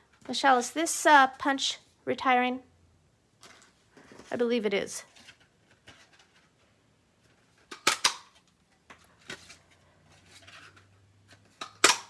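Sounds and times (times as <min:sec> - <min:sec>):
paper punch snapping: 0:07.7 - 0:08.3, 0:11.6 - 0:12.0.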